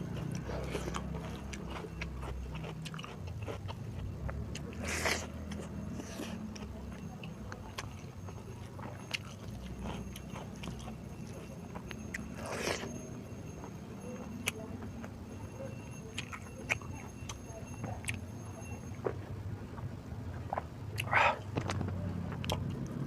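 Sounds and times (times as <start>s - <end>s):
person chewing: 0.0s - 13.0s, 16.2s - 16.9s, 20.5s - 21.7s.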